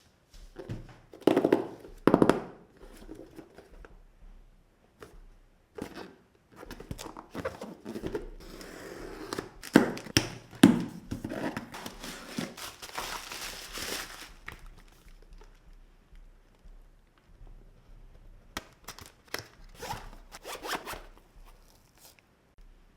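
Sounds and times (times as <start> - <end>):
packaging rustling and crinkling: 6.7 - 15.8, 18.6 - 22.2
cardboard box knocks and thuds: 6.9 - 15.2.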